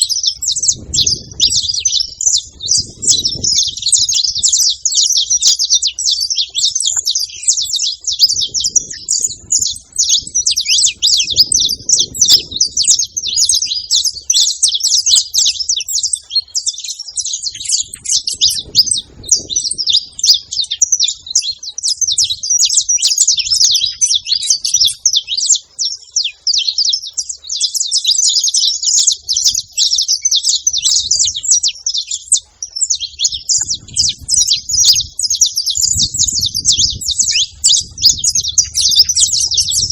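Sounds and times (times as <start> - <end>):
finches chirping: 0.0 - 39.9.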